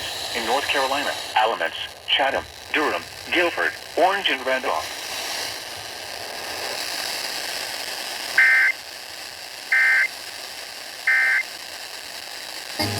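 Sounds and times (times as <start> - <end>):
faint radio hiss: 0.0 - 8.8, 9.7 - 12.9
digital data tone bursts: 8.4 - 8.7, 9.7 - 10.1, 11.1 - 11.4.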